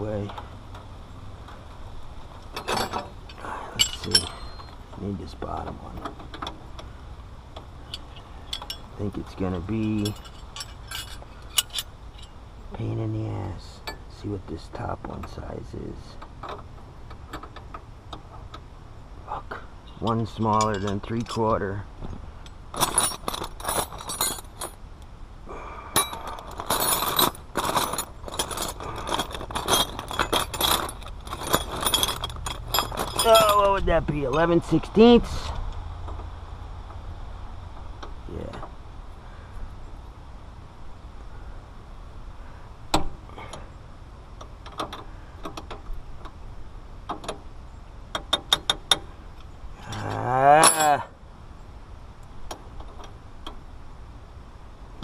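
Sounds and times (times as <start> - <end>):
wrenches clinking metallically: 2.5 - 6.6, 7.8 - 12.7, 19.8 - 21.8, 22.4 - 24.8, 25.9 - 35.5, 49.7 - 51.1.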